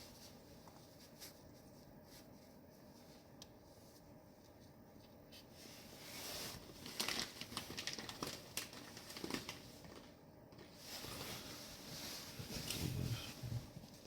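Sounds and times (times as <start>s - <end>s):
hands rustling: 0.0s - 9.6s.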